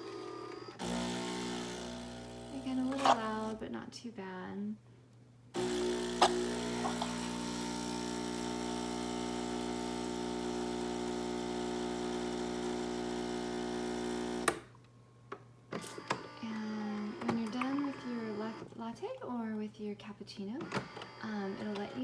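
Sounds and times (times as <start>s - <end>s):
espresso machine buzzing hum: 0.0s - 3.6s, 5.6s - 14.6s.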